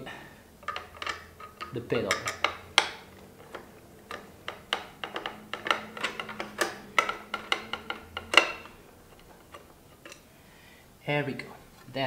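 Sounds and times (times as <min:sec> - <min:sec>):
metallic clicks of hand tool: 0:00.6 - 0:10.2.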